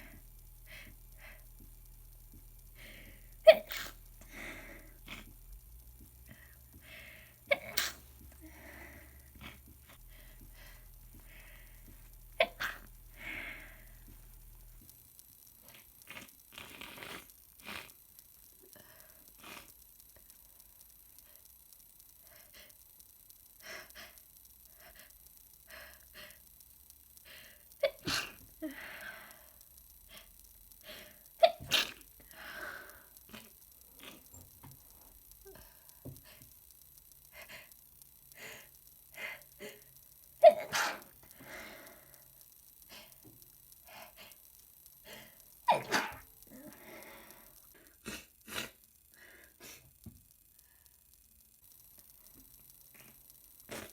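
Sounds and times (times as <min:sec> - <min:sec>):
congested sniffing and breathing: 0:00.0 - 0:01.8, 0:02.4 - 0:15.0, 0:15.6 - 0:18.0, 0:22.2 - 0:22.8, 0:23.6 - 0:26.6, 0:27.2 - 0:36.6, 0:37.2 - 0:50.0, 0:52.9 - 0:53.9
gasping breaths: 0:06.3 - 0:14.1, 0:27.2 - 0:34.3, 0:40.6 - 0:42.3, 0:45.0 - 0:49.9
person sneezing: 0:40.4 - 0:41.1, 0:45.7 - 0:46.2.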